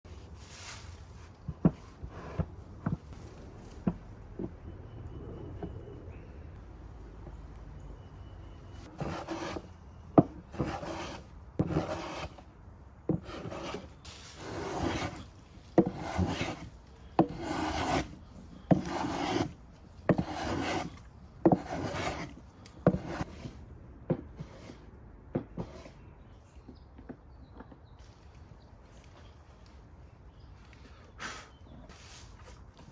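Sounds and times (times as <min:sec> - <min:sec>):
hand tool rasping wood: 0:09.0 - 0:12.4, 0:13.1 - 0:23.6.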